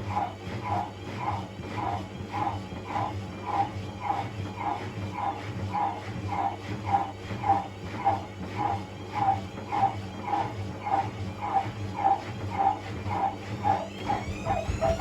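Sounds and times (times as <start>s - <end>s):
washing machine drum humming: 12.6s - 15.0s
rubber door seal squeaking: 13.9s - 15.0s.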